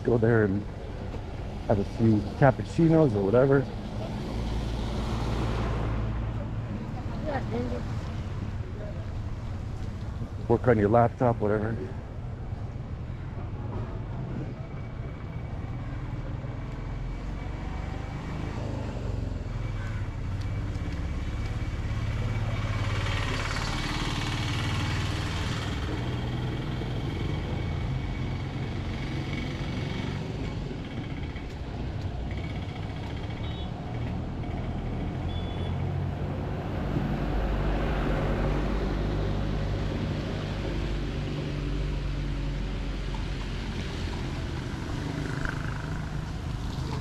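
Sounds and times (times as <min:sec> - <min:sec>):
motor vehicle passing: 0:02.9 - 0:10.0, 0:16.5 - 0:47.0.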